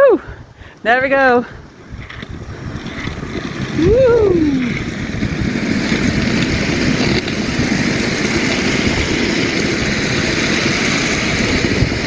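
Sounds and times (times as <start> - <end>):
skate wheels rolling on wet pavement: 0.0 - 12.0.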